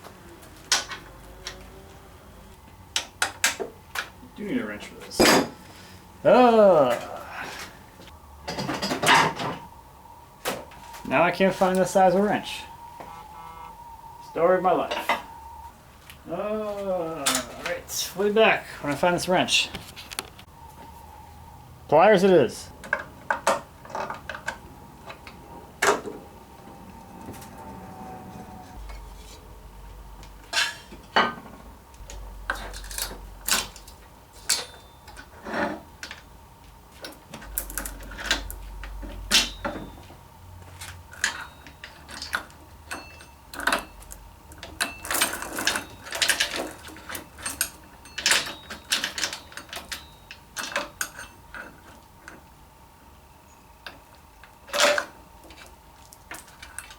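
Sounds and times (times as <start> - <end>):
hand tools clinking on metal: 32.1 - 36.2, 37.4 - 40.1, 40.8 - 52.0.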